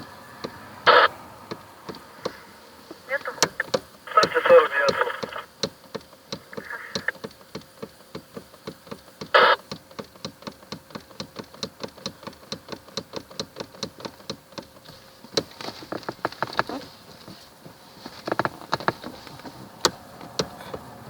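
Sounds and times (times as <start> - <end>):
rapid steering knocking: 5.2 - 21.0.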